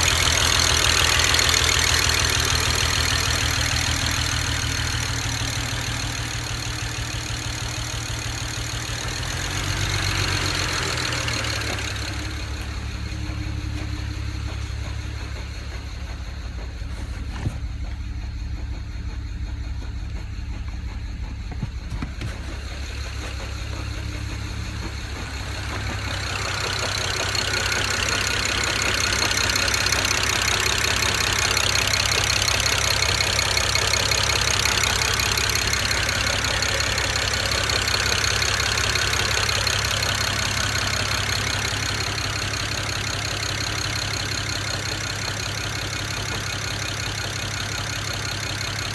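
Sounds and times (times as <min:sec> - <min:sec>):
car engine idling roughly: 0:00.0 - 0:48.9
engine hiss: 0:00.0 - 0:48.9.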